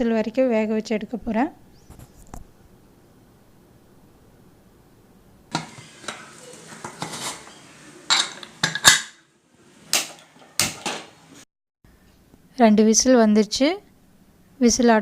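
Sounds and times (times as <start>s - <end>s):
metal pots clattering: 5.5s - 9.3s, 10.0s - 11.3s.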